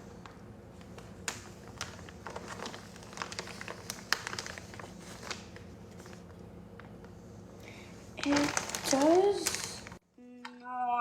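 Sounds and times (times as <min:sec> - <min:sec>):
small clicks and crackles: 0:00.2 - 0:07.1, 0:08.2 - 0:10.0.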